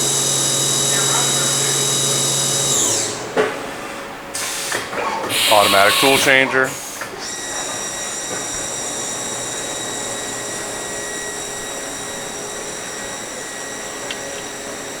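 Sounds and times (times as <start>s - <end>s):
milling machine whine: 0.0s - 15.0s
constant hiss: 5.3s - 6.9s.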